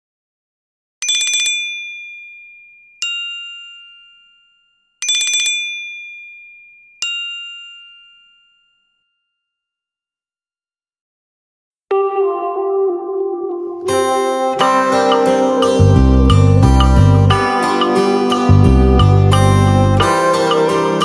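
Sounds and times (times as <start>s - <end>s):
bell-like phone ringtone: 1.0s - 9.7s, 13.6s - 21.0s.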